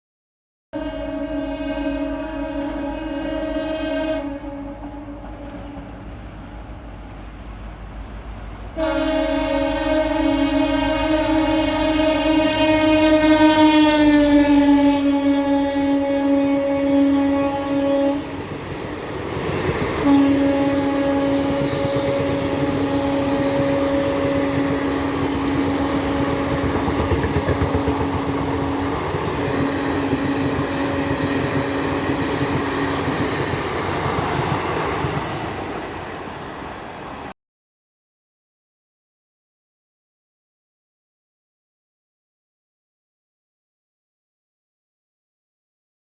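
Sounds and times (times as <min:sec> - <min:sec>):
locomotive horn blowing: 0:00.8 - 0:06.9, 0:08.8 - 0:18.5, 0:20.0 - 0:33.1
train rumble: 0:02.8 - 0:37.3.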